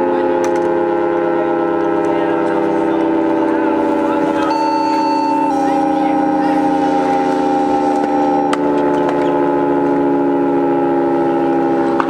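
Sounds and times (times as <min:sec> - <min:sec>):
warning siren chord: 0:00.8 - 0:12.0
thin steady tone: 0:04.4 - 0:10.7.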